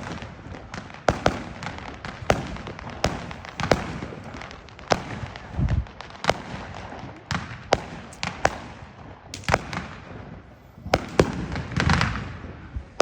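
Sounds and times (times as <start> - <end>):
fireworks bangs: 0.0 - 13.0.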